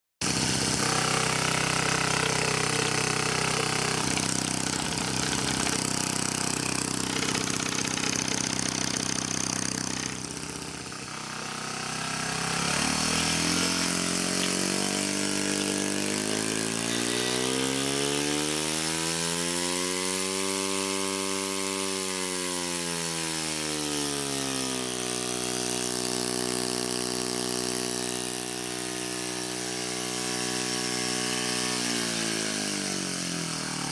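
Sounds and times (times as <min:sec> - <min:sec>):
compressor humming: 0:00.2 - 0:18.3.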